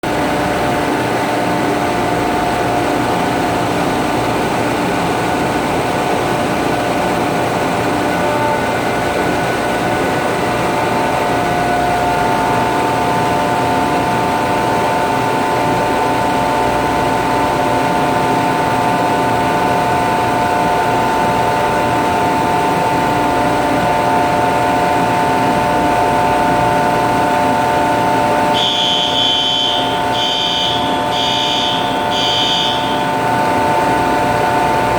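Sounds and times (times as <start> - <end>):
steady mechanical hum: 0.0 - 34.9
smoke detector alarm beeps: 28.5 - 33.1.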